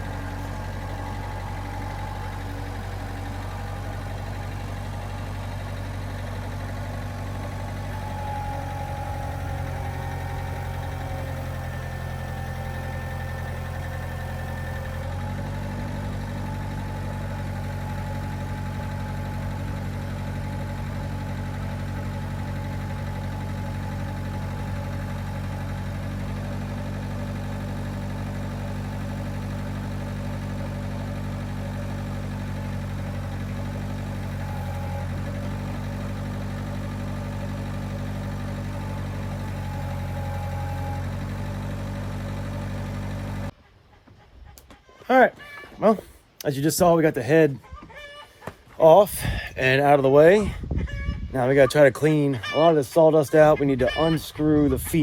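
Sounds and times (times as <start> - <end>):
engine idling: 0.0 - 43.6.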